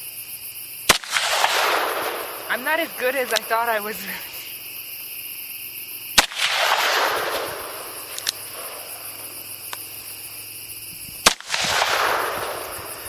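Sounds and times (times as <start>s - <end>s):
faint cracks: 6.2s - 10.2s.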